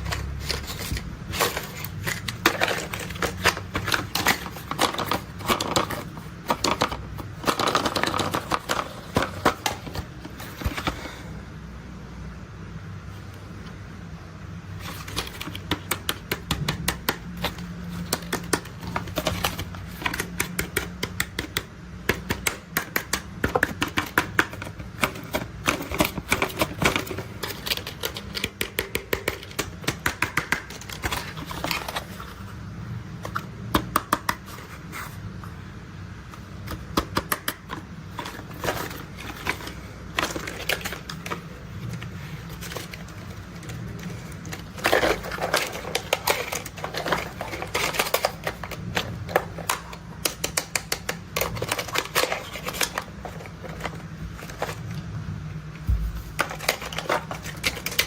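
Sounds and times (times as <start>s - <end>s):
plastic toys clicking and clattering: 0.0s - 11.0s, 14.7s - 32.4s, 36.3s - 55.0s, 55.8s - 58.0s
low steady hum: 30.7s - 58.0s.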